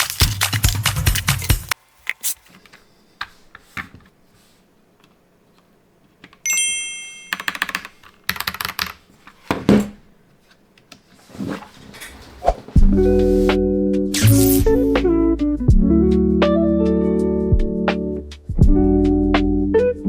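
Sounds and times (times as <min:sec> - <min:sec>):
mechanical keyboard keys clacking: 0:00.0 - 0:01.8, 0:07.3 - 0:09.0
short bright chime: 0:06.5 - 0:07.4.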